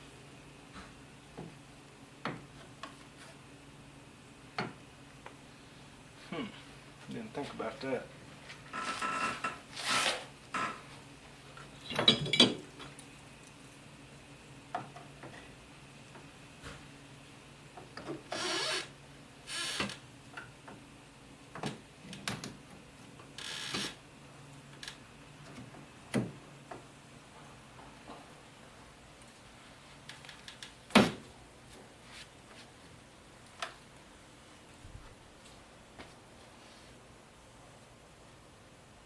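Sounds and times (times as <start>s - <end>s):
metal tools clanking and scraping: 11.8s - 12.6s.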